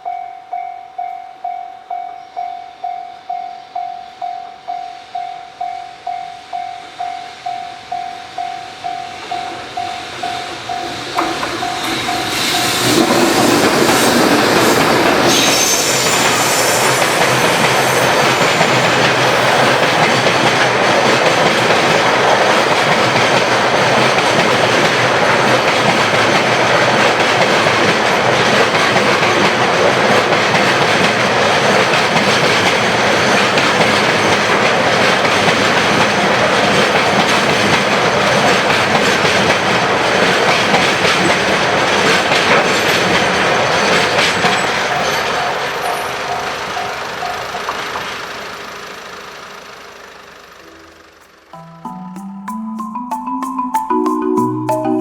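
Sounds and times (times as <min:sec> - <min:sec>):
freight train wheels rolling on rails: 0:02.8 - 0:51.6.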